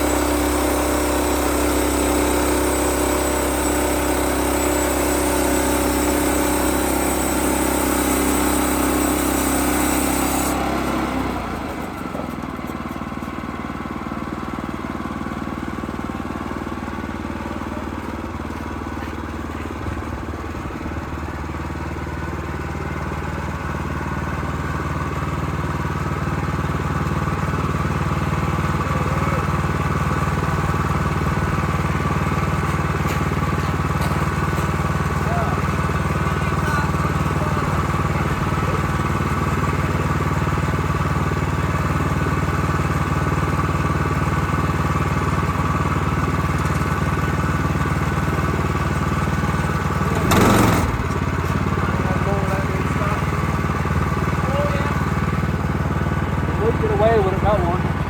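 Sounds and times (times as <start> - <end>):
sawmill engine running: 0.0 - 58.0.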